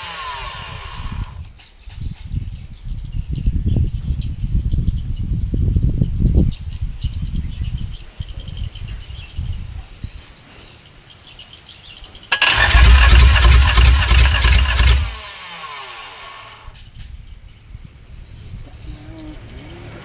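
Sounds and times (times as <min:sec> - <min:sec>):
diesel engine cranking: 0:00.0 - 0:01.4, 0:12.3 - 0:16.6
starter motor whine winding down: 0:00.0 - 0:01.4, 0:12.3 - 0:16.7
uneven low engine thumps: 0:12.3 - 0:15.4.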